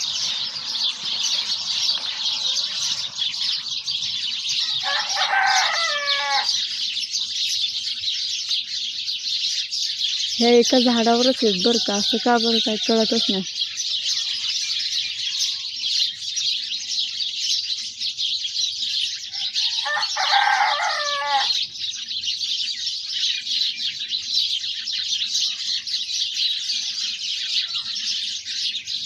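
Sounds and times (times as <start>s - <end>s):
rooster crowing: 0.0s - 6.7s, 19.3s - 21.6s
flock of small birds chirping: 0.0s - 29.0s.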